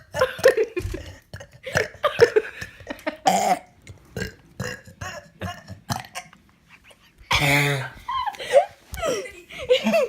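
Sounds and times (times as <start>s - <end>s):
person burping: 0.0s - 6.3s, 7.3s - 8.0s.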